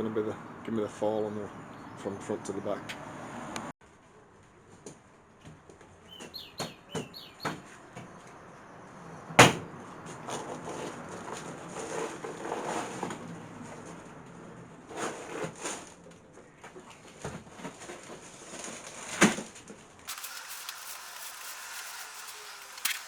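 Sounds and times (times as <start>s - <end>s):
small bird chirping: 6.0s - 8.4s.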